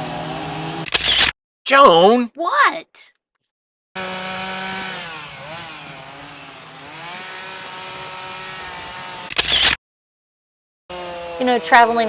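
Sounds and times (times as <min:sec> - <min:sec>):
chainsaw cutting log: 0:00.0 - 0:01.3, 0:04.0 - 0:09.8, 0:10.9 - 0:12.0.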